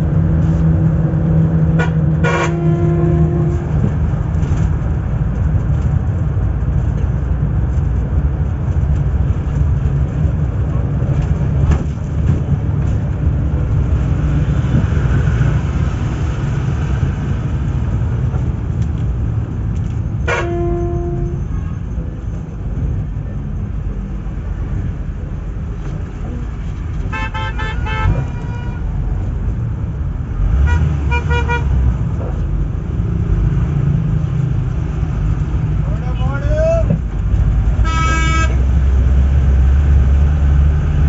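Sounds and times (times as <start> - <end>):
bus engine and road rumble: 0.0 - 41.0
pulsing horn toots: 1.7 - 3.9, 20.2 - 21.9, 27.1 - 28.9, 30.6 - 31.8, 37.8 - 38.7
horn: 1.8 - 3.7, 37.8 - 38.6.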